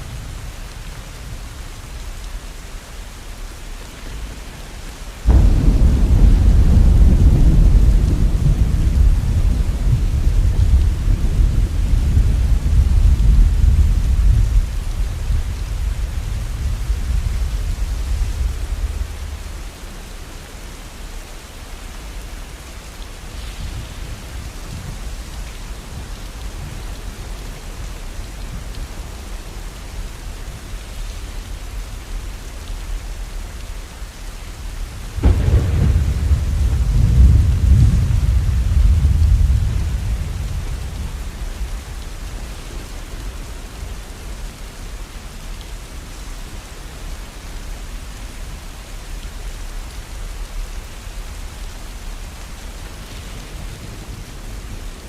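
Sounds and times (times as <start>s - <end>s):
steady falling rain: 0.0s - 55.0s
thunder rumbling: 5.3s - 20.1s, 35.1s - 43.4s.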